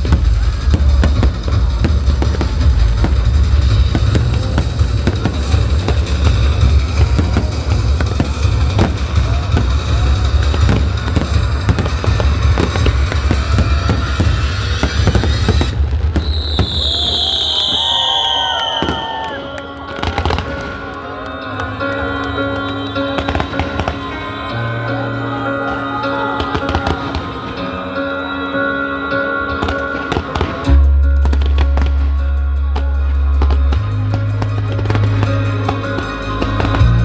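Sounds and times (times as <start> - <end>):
loud music with heavy bass: 0.0 - 16.7, 29.8 - 37.0
fireworks bangs and crackles: 0.0 - 24.3, 26.4 - 27.6, 29.5 - 37.0.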